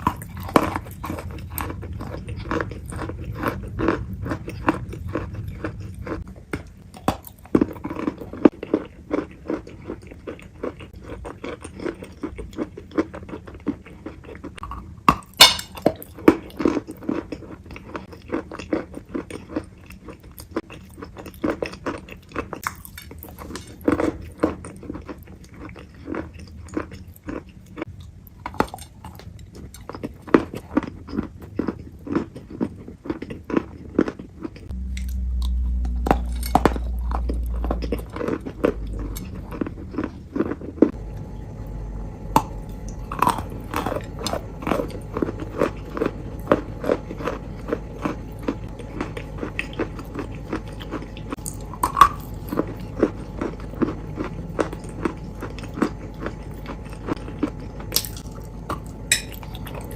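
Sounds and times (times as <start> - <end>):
low rumble: 0.0 - 6.9, 34.7 - 59.9
crunchy chewing: 0.0 - 59.9.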